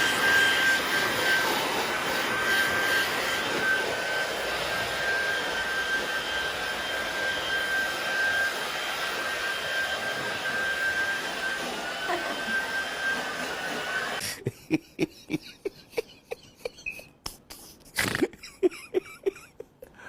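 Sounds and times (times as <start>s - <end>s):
electric blower hissing and whining: 0.0s - 14.4s.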